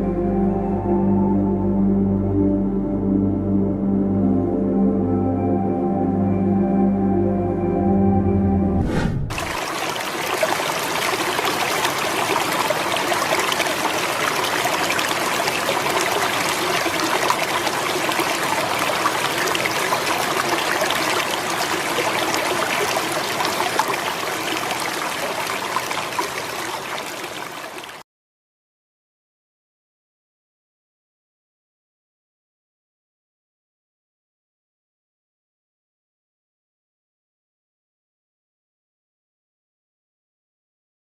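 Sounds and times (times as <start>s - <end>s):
running water trickling: 9.3s - 28.0s.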